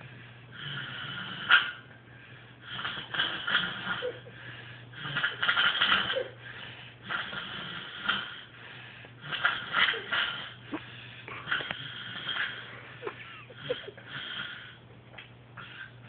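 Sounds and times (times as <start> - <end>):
person snoring: 0.5 - 1.8, 7.0 - 8.6, 9.2 - 14.8.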